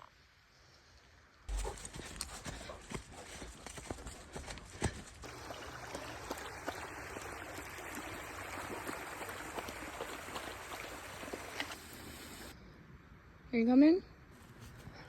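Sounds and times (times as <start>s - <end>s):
creek rushing: 5.2s - 12.6s.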